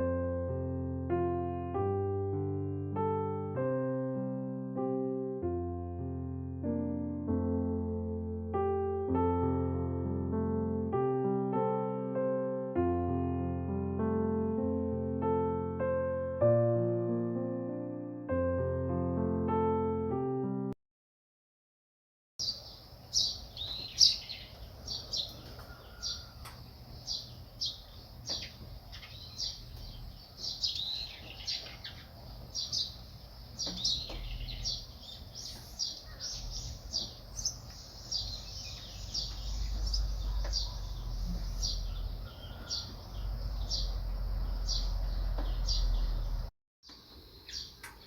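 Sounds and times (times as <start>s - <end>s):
small birds chirping: 22.4s - 48.0s.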